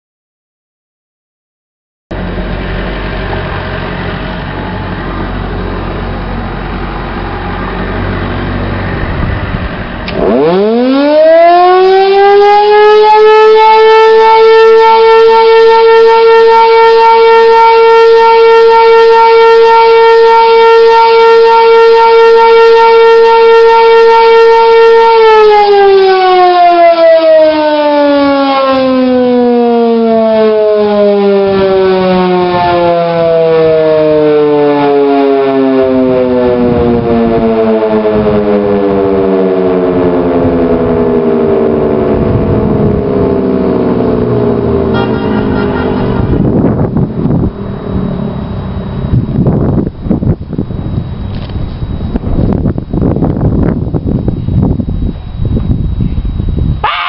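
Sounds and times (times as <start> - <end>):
steady background noise: 2.1 - 11.4
warning siren: 2.1 - 57.0.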